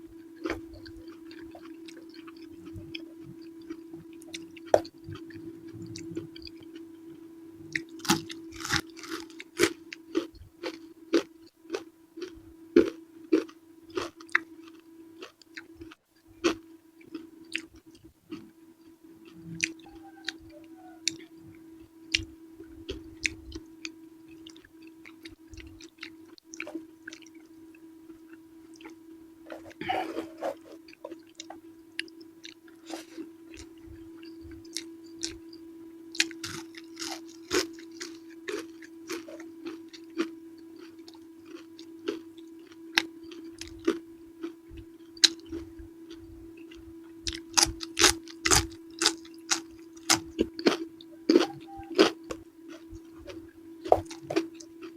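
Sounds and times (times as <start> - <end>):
steady low hum: 0.0 - 54.9
chewing food: 0.4 - 54.9.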